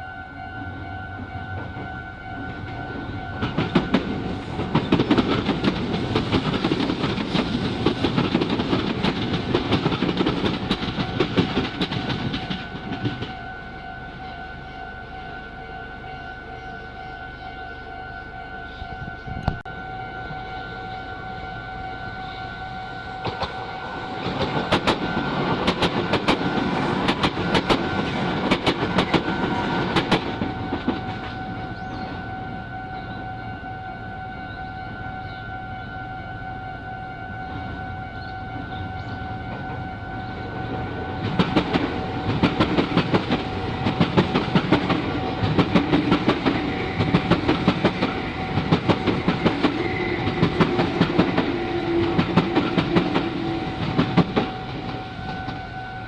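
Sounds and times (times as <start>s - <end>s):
crossing alarm two-note tone: 0.0s - 4.2s, 12.3s - 44.0s, 48.0s - 56.0s
train wheels clacking: 1.5s - 13.5s, 23.2s - 32.1s, 41.2s - 55.8s.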